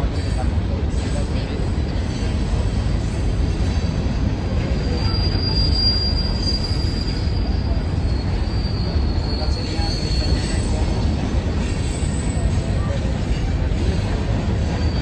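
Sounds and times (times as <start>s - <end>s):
train wheels rumbling on rail: 0.0s - 15.0s
high-pitched wheel squeal: 4.7s - 12.7s.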